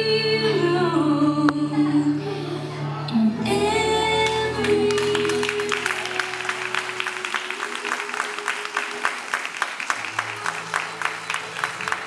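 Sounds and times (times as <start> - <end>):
backing music: 2.8 - 12.0
audience applauding: 4.2 - 12.0.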